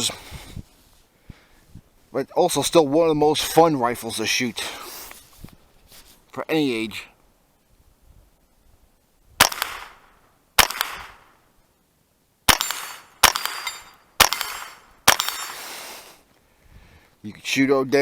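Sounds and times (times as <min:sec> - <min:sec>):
rifle shots: 0:09.4 - 0:11.3, 0:12.5 - 0:15.8
steel plates ringing: 0:12.6 - 0:15.7.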